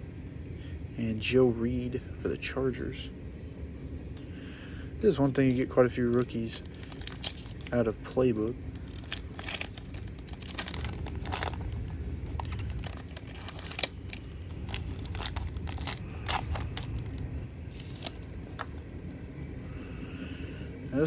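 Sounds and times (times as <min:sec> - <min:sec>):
foil wrapper tearing and crinkling: 0:06.1 - 0:17.2.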